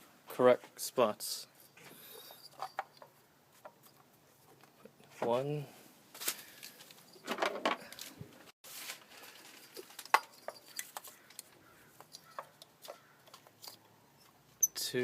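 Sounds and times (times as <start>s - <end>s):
clicks and knocks of parts: 2.4s - 4.8s, 6.2s - 8.2s, 9.6s - 14.4s
short rustle: 7.8s - 10.0s.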